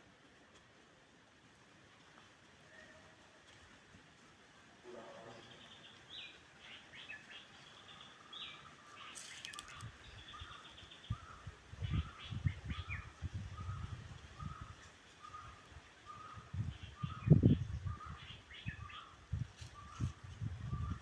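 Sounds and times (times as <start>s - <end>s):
birds chirping: 5.2s - 13.8s.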